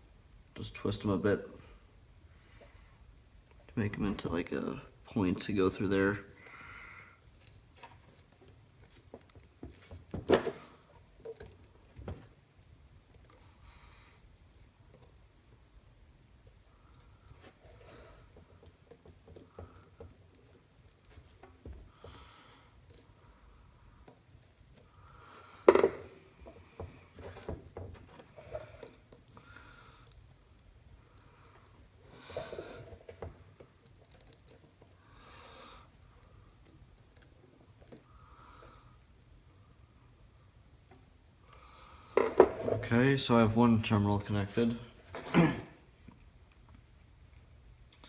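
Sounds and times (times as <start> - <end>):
copper wire clicking and rustling: 33.0 - 35.0.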